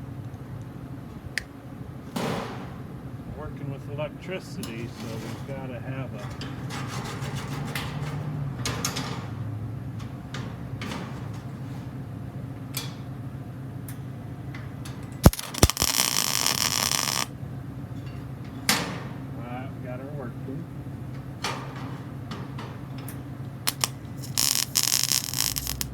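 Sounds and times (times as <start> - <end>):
steady low hum: 0.0 - 25.9
welding arc crackling buzz: 5.6 - 19.4, 20.7 - 25.9
metal clicks and scrapes: 6.2 - 12.1, 21.2 - 25.9
welding arc cracks: 15.2 - 17.3, 23.6 - 25.9.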